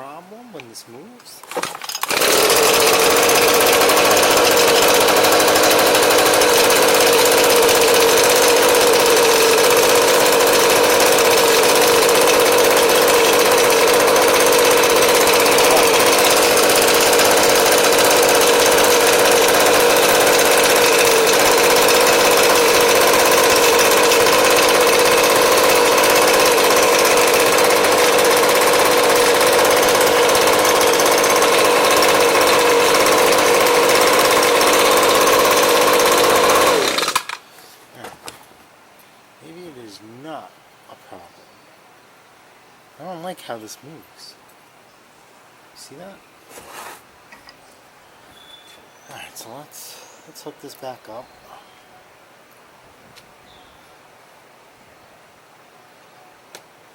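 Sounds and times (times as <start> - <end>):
leaf blower engine running: 1.6 - 37.4.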